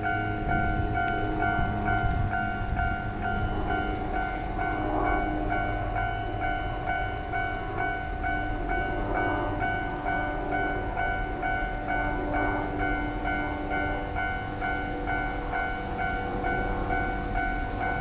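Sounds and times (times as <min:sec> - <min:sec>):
level-crossing two-tone alarm: 0:00.0 - 0:18.0
passing train rumble: 0:00.0 - 0:18.0.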